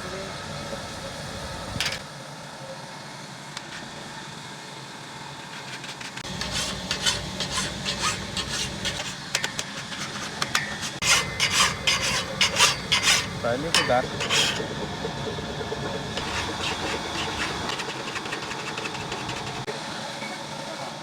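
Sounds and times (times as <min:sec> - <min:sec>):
file rasping on saw blade: 0:05.5 - 0:14.9, 0:16.2 - 0:19.7.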